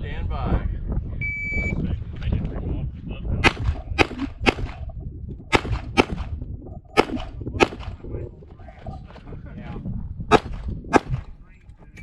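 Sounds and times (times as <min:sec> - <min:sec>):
pistol shots: 0:03.4 - 0:04.8, 0:05.5 - 0:06.4, 0:07.0 - 0:08.0, 0:10.3 - 0:11.2.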